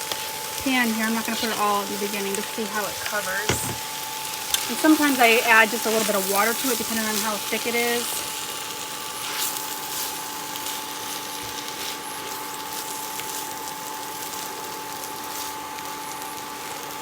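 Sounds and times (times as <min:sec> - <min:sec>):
utensil stirring clicks and scrapes: 0:00.0 - 0:07.2
food sizzling in a frying pan: 0:00.0 - 0:17.0.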